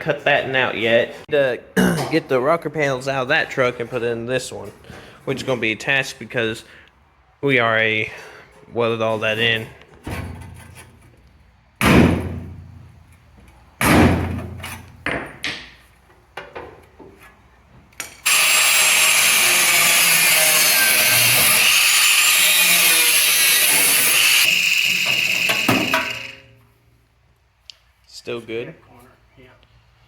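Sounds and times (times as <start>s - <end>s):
power tool on sheet metal: 18.2s - 26.5s.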